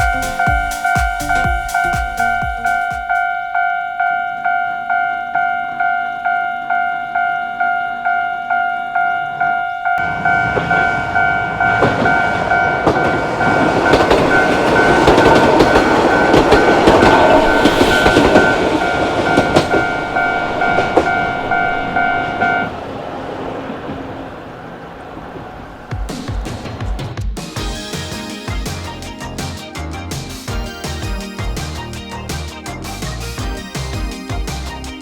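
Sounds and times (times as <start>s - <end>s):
level crossing bell ringing: 0.0s - 22.7s
train wheels clicking over rail joints: 10.0s - 22.5s.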